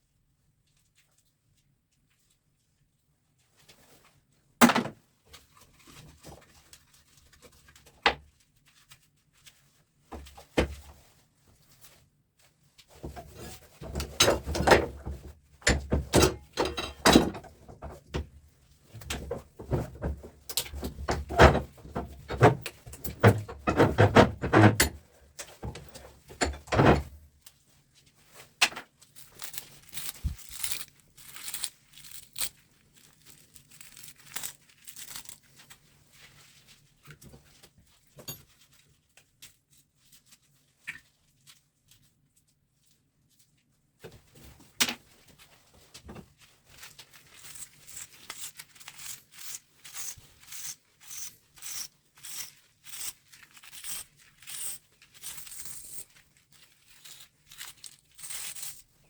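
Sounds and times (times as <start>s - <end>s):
metal parts knocking and clinking: 13.8s - 17.6s.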